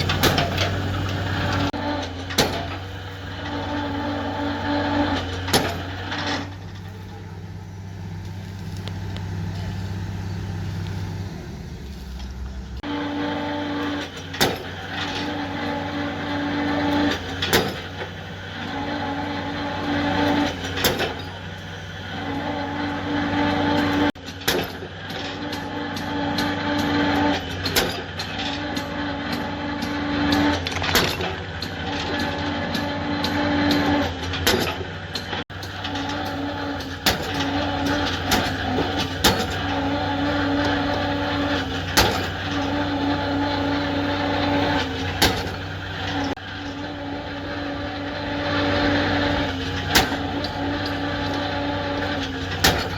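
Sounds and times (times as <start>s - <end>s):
strained hydraulic tone: 0.0s - 24.2s, 35.5s - 52.9s
diesel engine under load: 0.0s - 52.9s.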